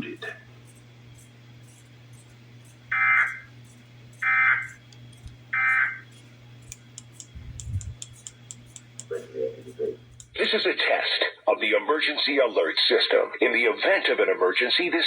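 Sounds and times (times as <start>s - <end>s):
low hum: 0.0s - 10.4s.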